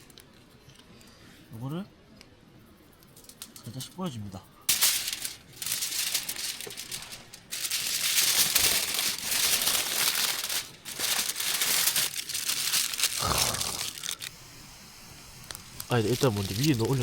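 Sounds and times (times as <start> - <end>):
aluminium foil crinkling: 0.0 - 1.1, 3.0 - 4.0, 4.6 - 14.3, 15.4 - 17.0.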